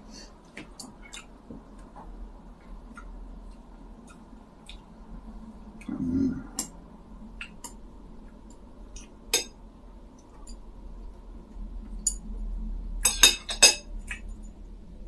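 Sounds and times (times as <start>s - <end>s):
tableware clinking: 13.0s - 13.9s.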